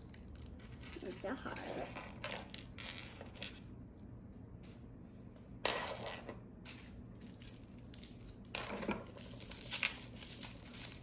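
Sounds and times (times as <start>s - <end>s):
plastic wrapping crinkling: 9.0s - 11.0s.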